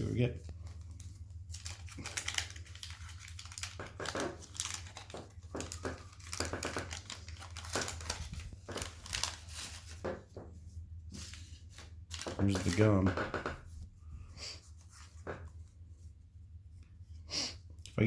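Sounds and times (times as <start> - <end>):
wax paper wrapper crinkling and tearing: 0.0 - 10.2, 11.1 - 13.0.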